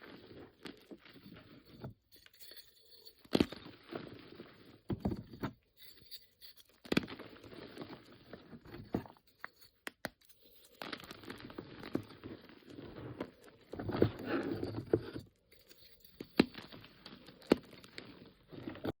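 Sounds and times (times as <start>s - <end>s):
chalk crunching and crumbling: 5.9s - 18.9s.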